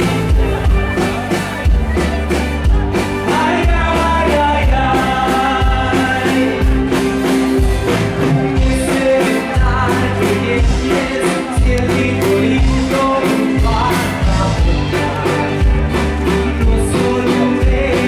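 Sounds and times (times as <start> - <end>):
bass and drum thump: 0.0 - 18.0
live band music: 0.0 - 18.0
person singing: 0.0 - 18.0.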